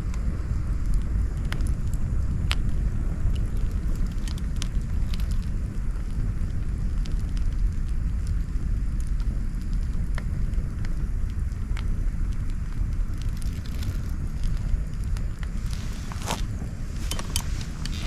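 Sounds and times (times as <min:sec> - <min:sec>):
campfire crackling: 0:00.0 - 0:18.0.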